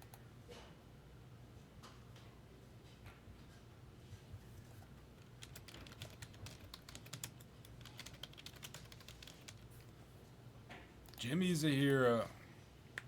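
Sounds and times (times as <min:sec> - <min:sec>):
computer keyboard typing: 0:05.4 - 0:09.6.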